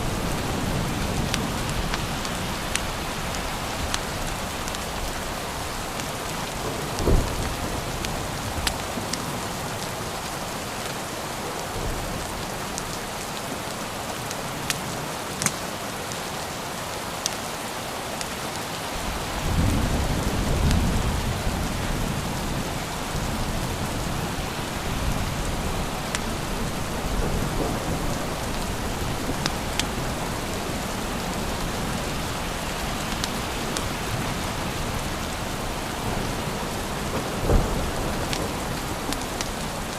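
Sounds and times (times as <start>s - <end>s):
thunder rumbling: 0.0s - 9.5s, 19.0s - 39.9s
steady rain falling: 0.0s - 39.9s.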